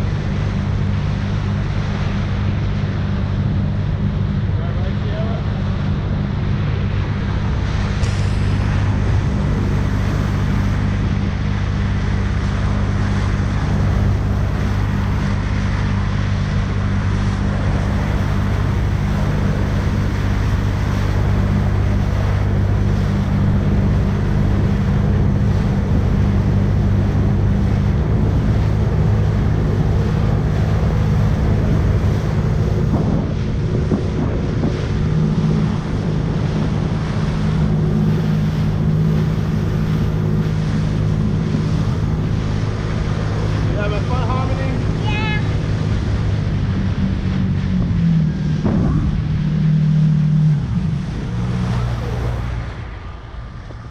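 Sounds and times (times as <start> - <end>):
jet ski engine running: 0.0 - 53.9
water rushing: 0.0 - 53.9
wind buffeting microphone: 0.0 - 53.9.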